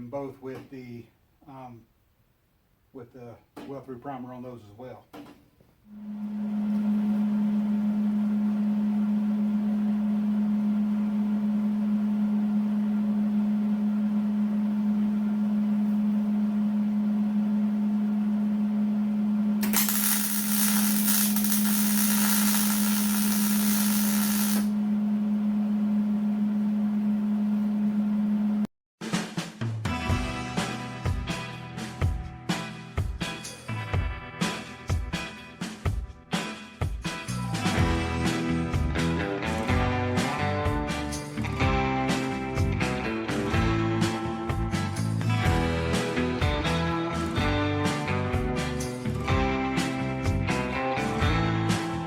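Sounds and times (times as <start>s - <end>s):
power tool motor humming: 19.6s - 24.8s
high hiss of tool on metal: 19.7s - 24.7s.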